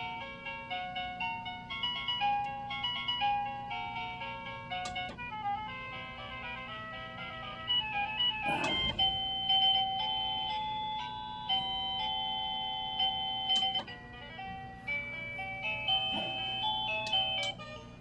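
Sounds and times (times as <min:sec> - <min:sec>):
doorbell chime beeping tones: 0:08.2 - 0:18.0.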